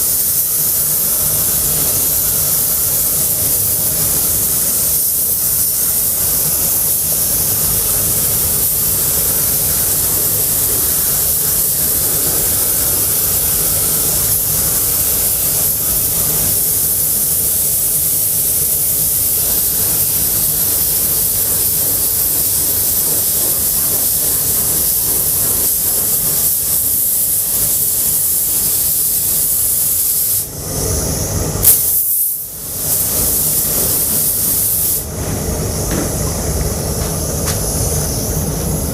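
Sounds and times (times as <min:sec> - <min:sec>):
paint spray gun hissing: 0:00.0 - 0:30.5, 0:31.6 - 0:38.9.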